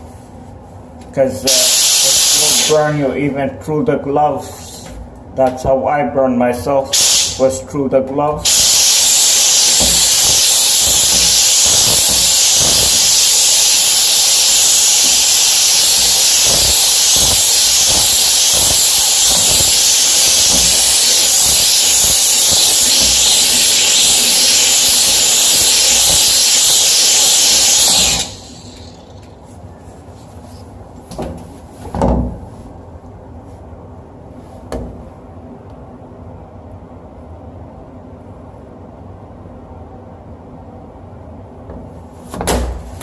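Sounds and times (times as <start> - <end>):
steam cleaner hissing: 1.5 - 3.0, 6.9 - 7.4, 8.4 - 29.2.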